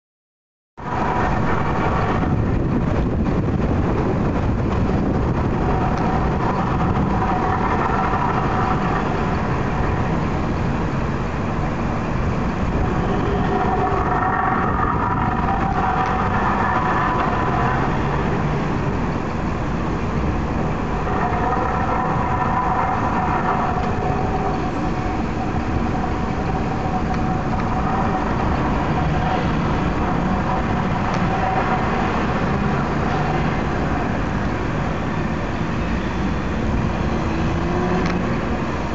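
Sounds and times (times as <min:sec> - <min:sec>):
metallic groaning rumble in sky: 0:00.8 - 0:38.9.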